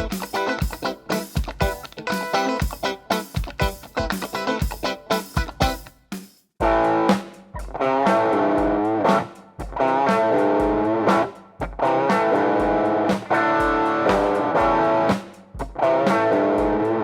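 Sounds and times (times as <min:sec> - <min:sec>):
electric guitar chords: 0:00.0 - 0:05.9, 0:06.6 - 0:17.0.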